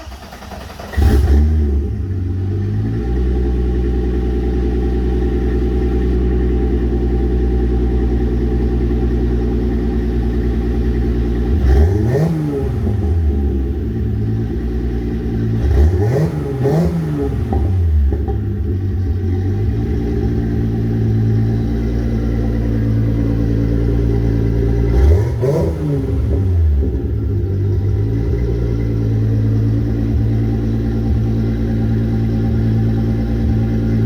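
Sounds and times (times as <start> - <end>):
engine revving: 0.0 - 4.8, 10.2 - 34.0
car engine starting and idling: 0.0 - 34.0.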